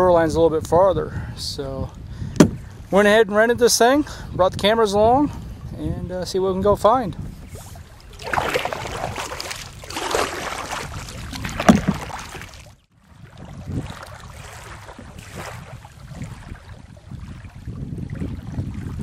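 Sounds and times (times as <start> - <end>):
thump: 2.4 - 2.6, 11.6 - 12.1
paddle strokes swishing water: 7.2 - 19.0.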